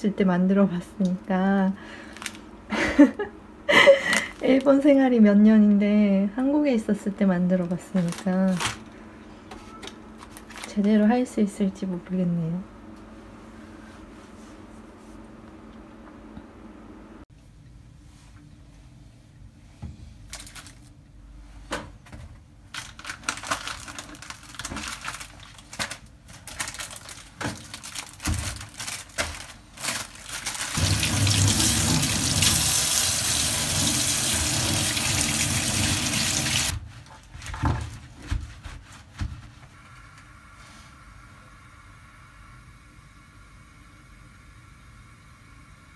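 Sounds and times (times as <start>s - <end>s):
kitchen tap running: 30.7s - 36.8s.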